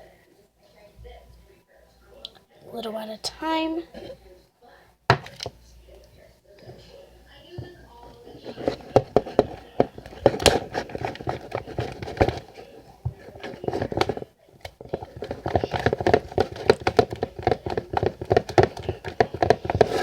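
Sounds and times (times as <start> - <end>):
utensil clicking and scraping in bowl: 7.6 - 20.0.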